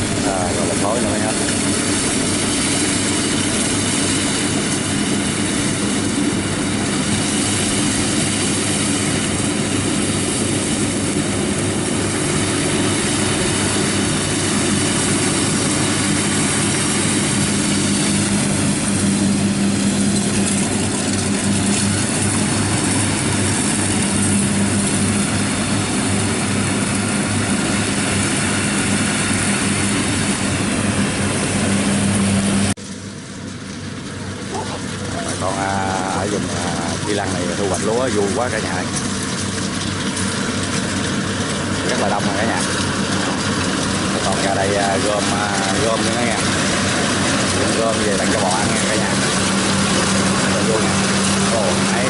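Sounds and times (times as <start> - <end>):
combine harvester running: 0.0 - 52.0.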